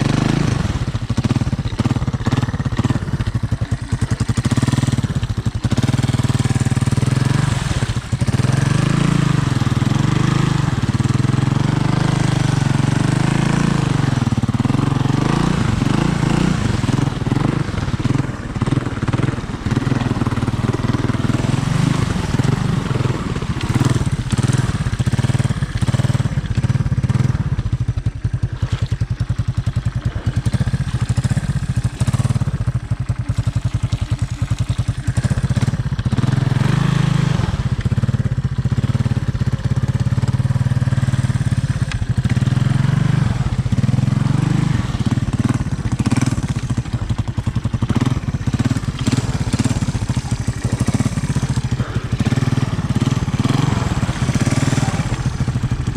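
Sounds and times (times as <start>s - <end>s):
three-wheeler engine running: 0.0s - 55.9s.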